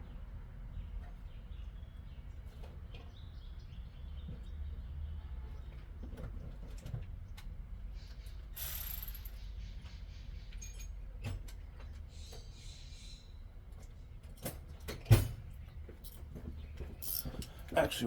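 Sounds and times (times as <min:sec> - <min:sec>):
hand tools clinking in metal toolbox: 0:17.0 - 0:18.0.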